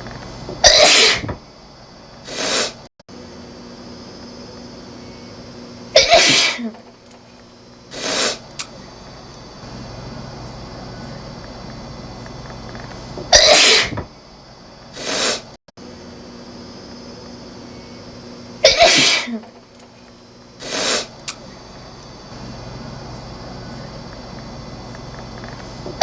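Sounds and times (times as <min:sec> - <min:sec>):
woman sneezing: 0:00.6 - 0:01.3, 0:06.0 - 0:06.8, 0:13.4 - 0:14.0, 0:18.6 - 0:19.5.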